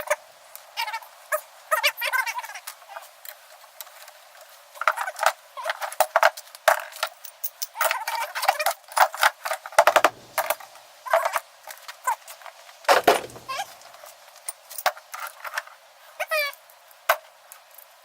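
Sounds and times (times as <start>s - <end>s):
hand tools clinking on metal: 12.9s - 13.8s.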